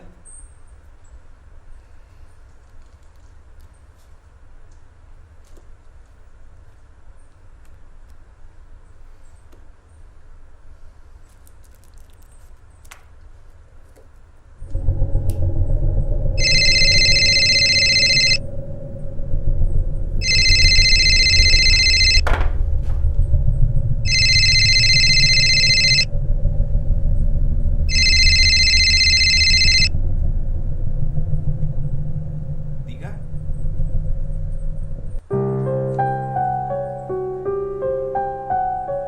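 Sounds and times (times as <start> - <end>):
low steady rumble: 14.5 - 35.3
telephone ringing with electronic trill: 16.4 - 18.4, 20.2 - 22.2, 24.1 - 26.1, 27.9 - 29.9.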